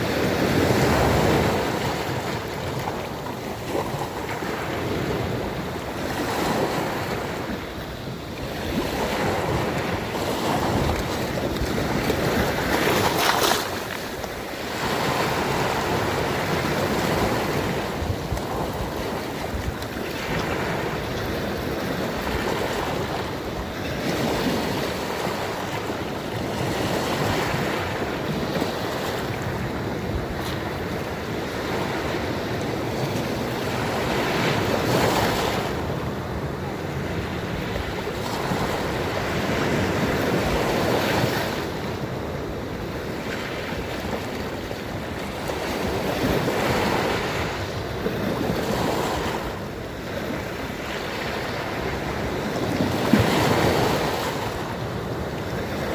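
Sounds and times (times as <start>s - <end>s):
sea waves breaking: 0.0s - 55.9s.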